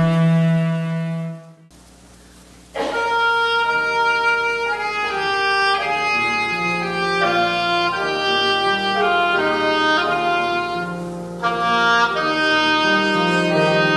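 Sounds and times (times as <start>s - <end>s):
instrumental music: 0.0s - 1.8s, 2.7s - 13.9s.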